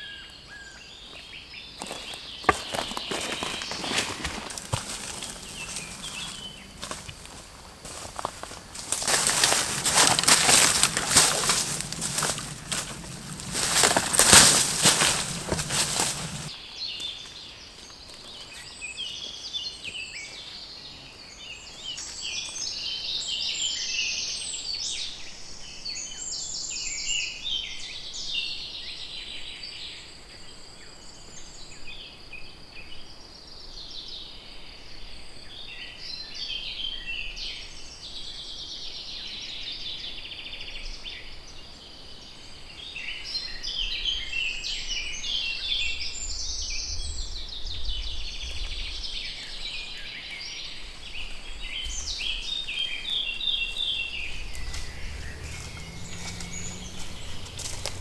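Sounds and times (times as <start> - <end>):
songbirds chorus: 0.0 - 24.6, 40.9 - 58.0.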